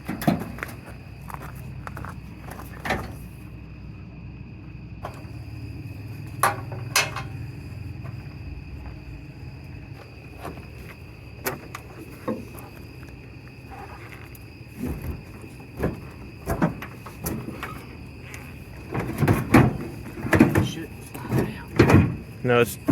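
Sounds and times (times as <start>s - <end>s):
insects chirring: 0.0s - 22.9s
low hum: 1.8s - 13.6s.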